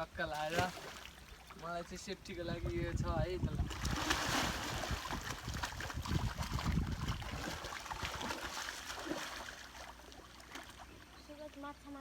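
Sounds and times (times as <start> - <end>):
water splashing from swimming: 0.3 - 1.7, 3.6 - 11.1.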